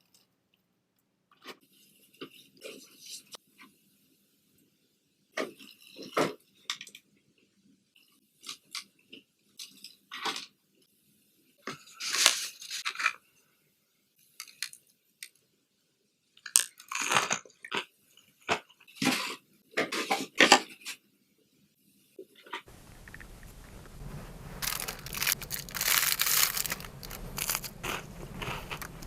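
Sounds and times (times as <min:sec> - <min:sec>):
chewing: 0:22.9 - 0:23.8, 0:24.6 - 0:29.0
crunching bites of fried chicken: 0:24.6 - 0:29.0.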